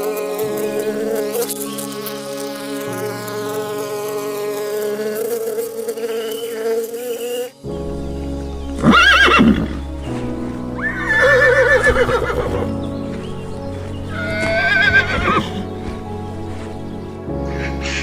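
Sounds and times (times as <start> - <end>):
background music: 0.0 - 18.0
horse whinnying: 8.8 - 9.8, 10.8 - 12.7, 14.1 - 15.6.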